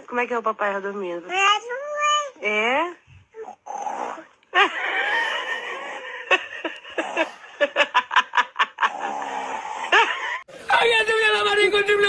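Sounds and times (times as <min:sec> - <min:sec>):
voice imitating snoring: 0:03.4 - 0:04.4, 0:08.9 - 0:10.4.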